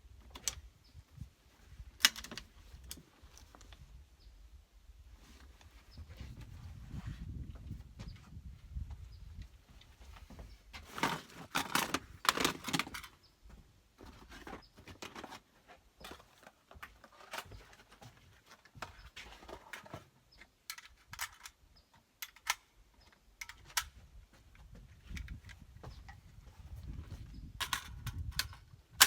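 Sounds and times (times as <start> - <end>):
handling clicks and knocks: 2.0 - 3.6, 10.8 - 13.3, 14.0 - 26.3, 27.6 - 29.0
rustling and clattering: 9.8 - 28.8.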